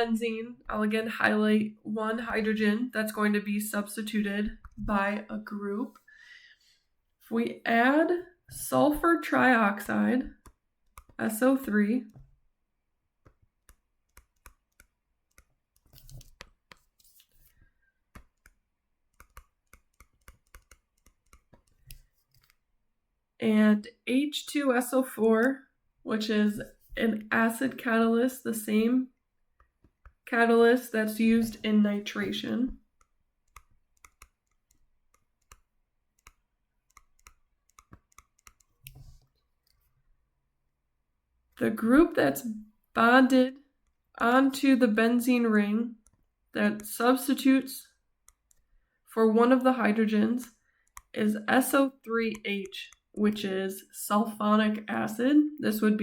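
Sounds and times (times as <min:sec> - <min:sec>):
faint clicks and taps: 0:04.5 - 0:04.9, 0:10.3 - 0:11.2, 0:13.2 - 0:22.6, 0:29.5 - 0:30.3, 0:32.7 - 0:39.9, 0:50.8 - 0:51.2
soft scratching: 0:15.8 - 0:17.6.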